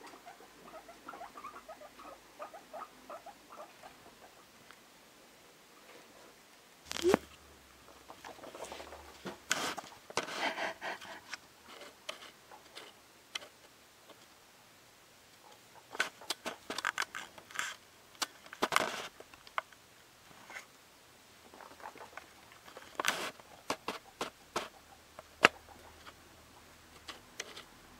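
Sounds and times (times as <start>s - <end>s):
guinea pig feet pattering: 6.9s - 10.3s, 21.5s - 26.2s.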